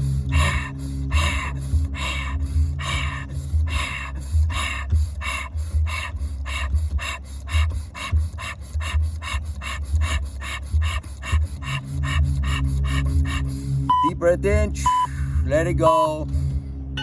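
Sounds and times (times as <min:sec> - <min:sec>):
low bass music: 0:00.0 - 0:17.0
rapid forceful breathing: 0:00.0 - 0:17.0.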